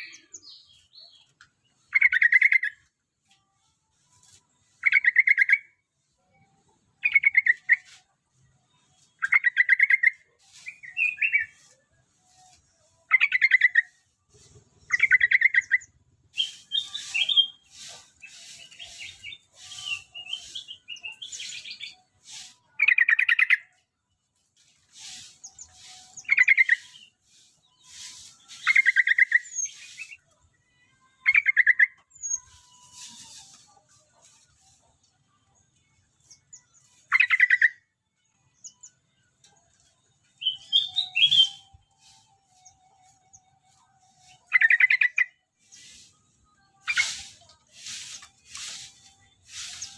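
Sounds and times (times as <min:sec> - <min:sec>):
bulbul singing: 0:12.6 - 0:23.8, 0:40.3 - 0:43.5.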